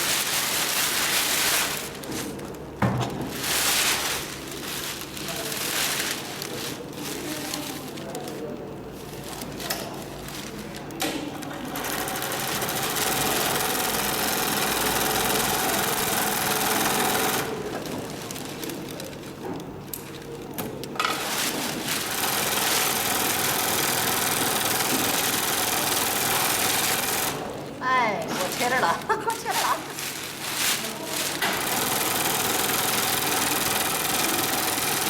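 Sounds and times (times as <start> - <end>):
sewing machine stitching: 11.6 - 17.8, 21.0 - 27.6, 31.2 - 35.0.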